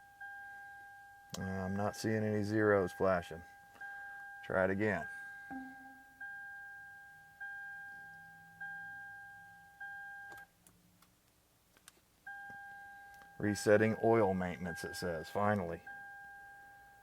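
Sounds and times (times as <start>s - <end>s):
dashboard warning chime: 2.8s - 10.3s, 12.3s - 17.0s.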